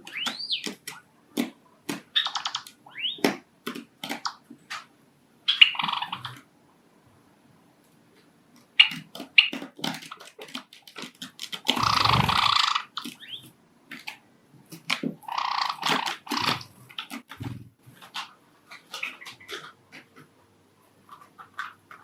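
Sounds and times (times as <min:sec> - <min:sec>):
harsh bird calls: 0:00.0 - 0:01.0, 0:02.1 - 0:03.3, 0:05.5 - 0:06.4, 0:11.7 - 0:13.5, 0:15.2 - 0:16.7
birds pecking clicks: 0:08.8 - 0:13.3.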